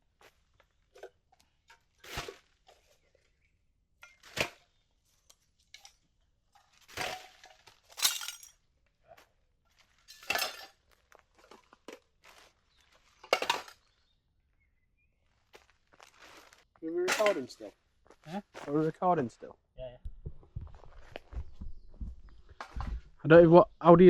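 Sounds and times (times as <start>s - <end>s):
litter clinking and rattling: 7.1s - 8.5s, 10.1s - 10.7s.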